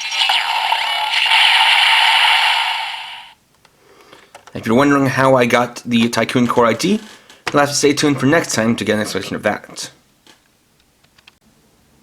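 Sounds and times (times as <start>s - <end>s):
toy electronic hiss effect: 0.0s - 3.4s.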